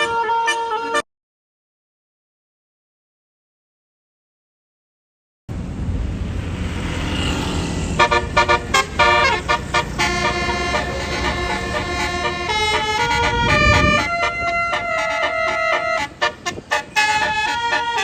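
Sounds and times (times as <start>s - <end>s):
multi-tone bus horn playing a tune: 0.0s - 1.1s, 7.9s - 18.0s
low engine rumble: 5.5s - 18.0s.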